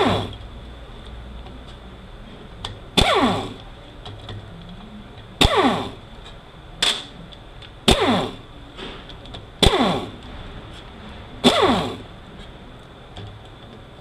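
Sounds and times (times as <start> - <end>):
impact tool bursts: 0.0 - 0.4, 3.0 - 3.6, 5.4 - 6.0, 7.9 - 8.5, 9.6 - 10.2, 11.4 - 12.1.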